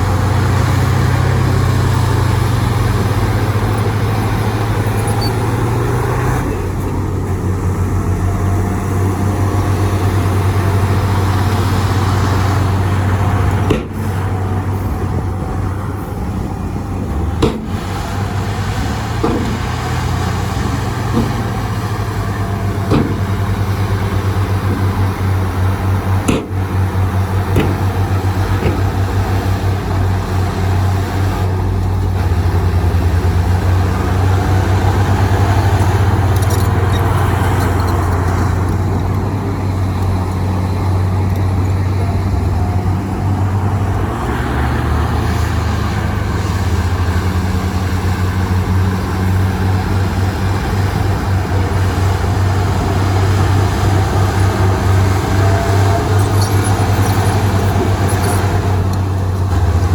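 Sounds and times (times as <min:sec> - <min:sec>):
heavy diesel machinery running: 0:00.0 - 0:59.9
metallic knocks and clanks: 0:11.2 - 0:14.3, 0:17.4 - 0:18.0, 0:19.1 - 0:30.0.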